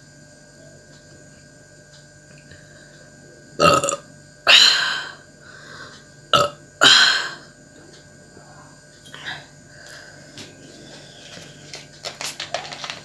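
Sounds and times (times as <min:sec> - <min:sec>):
woman burping: 0:03.6 - 0:05.2, 0:06.3 - 0:07.5.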